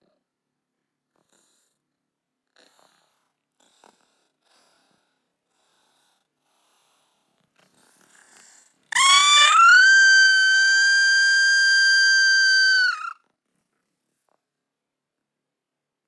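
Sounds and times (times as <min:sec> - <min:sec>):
kitten crying: 0:09.0 - 0:13.1.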